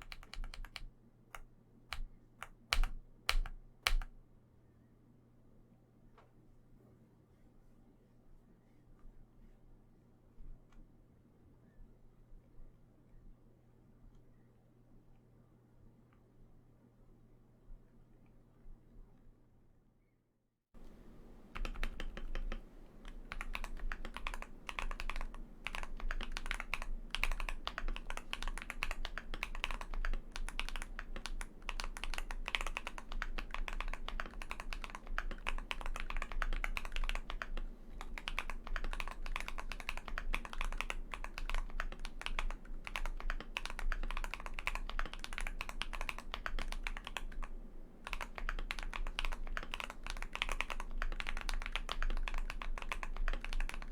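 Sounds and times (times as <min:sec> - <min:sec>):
mechanical keyboard typing: 0:00.0 - 0:04.1, 0:21.5 - 0:53.9.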